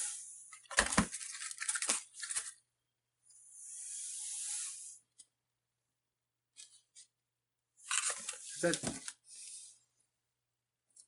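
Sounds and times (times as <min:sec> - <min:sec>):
crinkling handling noise: 0:00.6 - 0:02.6, 0:07.8 - 0:09.2.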